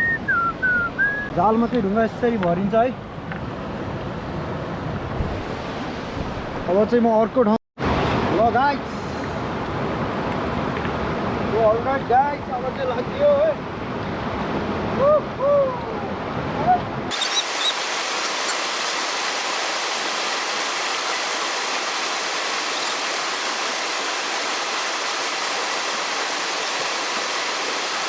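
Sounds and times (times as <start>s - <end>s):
river water rushing: 17.1s - 28.0s.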